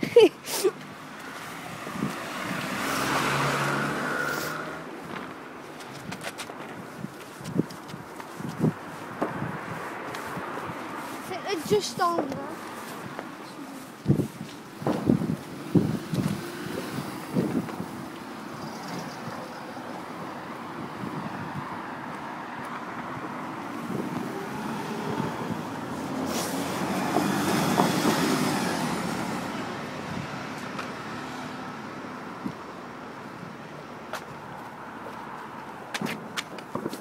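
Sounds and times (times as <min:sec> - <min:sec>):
car passing by: 0:01.1 - 0:05.3, 0:14.9 - 0:33.6.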